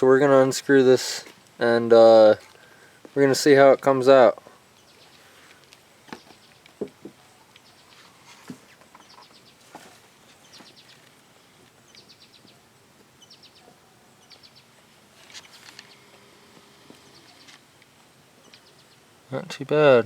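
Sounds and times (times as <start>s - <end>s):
high ticking chirps: 10.4s - 13.6s, 17.0s - 20.0s.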